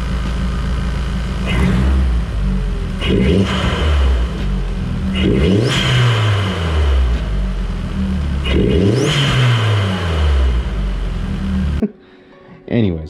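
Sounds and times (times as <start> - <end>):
car engine revving: 0.0 - 11.8.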